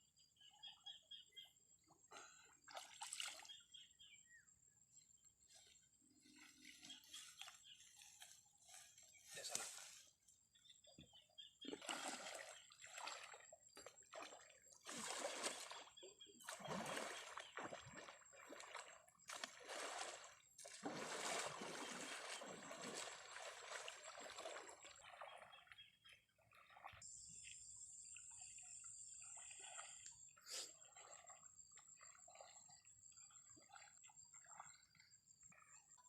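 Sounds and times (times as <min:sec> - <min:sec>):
water splashing and sloshing: 0:01.6 - 0:04.1, 0:04.9 - 0:36.0.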